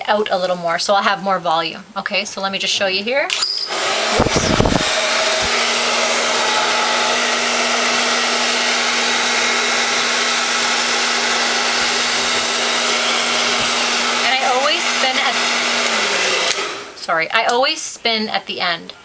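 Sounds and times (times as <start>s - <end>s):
hair dryer blowing: 3.4s - 17.1s.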